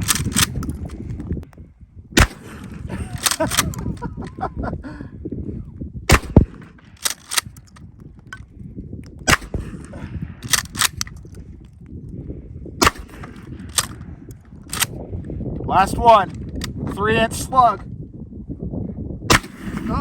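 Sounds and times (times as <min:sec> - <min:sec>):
shotgun pump clacking: 0:00.0 - 0:01.0, 0:02.2 - 0:04.1, 0:06.2 - 0:08.5, 0:10.4 - 0:11.4, 0:12.8 - 0:14.9
shotgun shots: 0:02.2 - 0:04.0, 0:06.1 - 0:07.6, 0:09.3 - 0:11.0, 0:12.8 - 0:14.0, 0:19.3 - 0:20.0.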